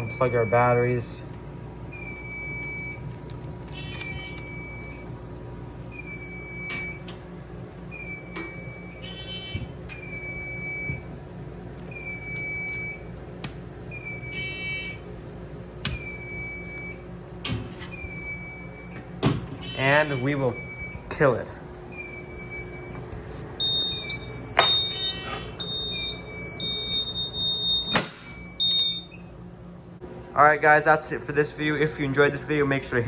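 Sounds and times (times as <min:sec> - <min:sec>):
high steady alarm beep: 0:00.0 - 0:01.0, 0:03.8 - 0:05.1, 0:07.9 - 0:11.1, 0:11.9 - 0:13.1, 0:13.9 - 0:15.1, 0:16.0 - 0:17.1, 0:19.6 - 0:21.2, 0:21.9 - 0:23.0, 0:23.6 - 0:29.3
harsh buzzing alarm tone: 0:00.0 - 0:01.2, 0:03.7 - 0:05.2, 0:05.9 - 0:07.2, 0:07.9 - 0:11.2, 0:11.9 - 0:13.2, 0:13.9 - 0:15.2, 0:15.9 - 0:17.2, 0:17.9 - 0:29.3.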